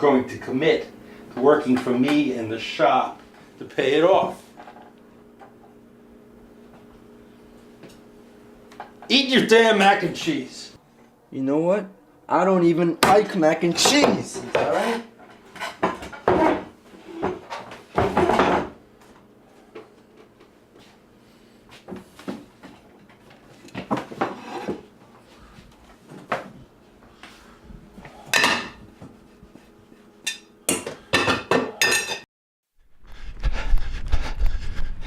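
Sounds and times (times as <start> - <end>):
cutlery clinking on plates: 30.3 - 32.2.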